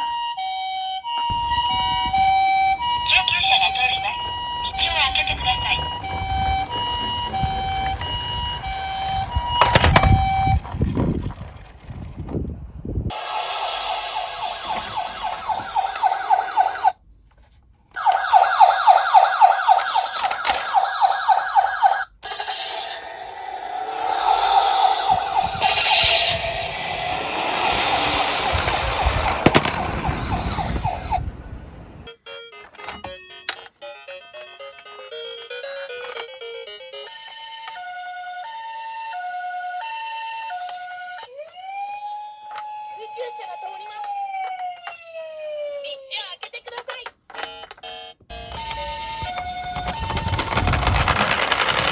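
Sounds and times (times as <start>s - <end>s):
emergency siren yelping: 0.0s - 11.0s, 13.1s - 17.0s, 18.0s - 32.2s, 38.0s - 46.1s, 48.3s - 51.9s
electronic jingle melody: 1.3s - 10.6s.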